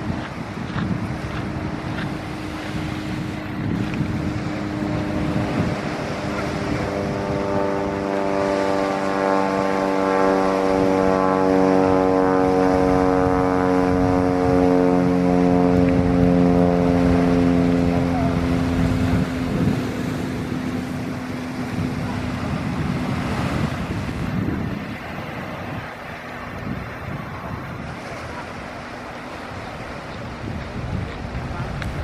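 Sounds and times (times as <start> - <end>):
steady rushing background noise: 0.0 - 13.0
engine drone: 0.0 - 32.0.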